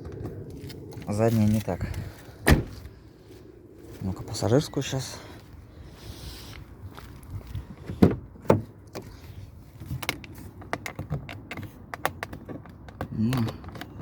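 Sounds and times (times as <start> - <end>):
plastic door handle clicks and knocks: 9.9 - 14.0.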